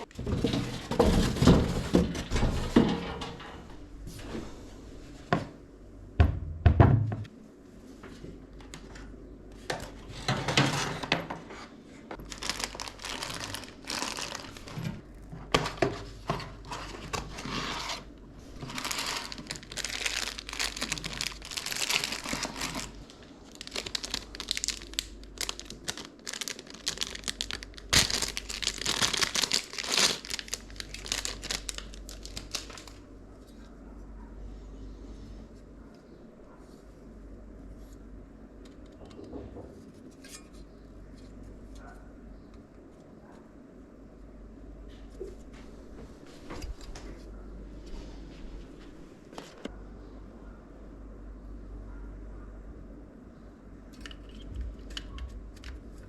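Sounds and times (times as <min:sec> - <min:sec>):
knocks and thuds: 0:06.2 - 0:07.3
packaging crinkling: 0:12.1 - 0:33.1.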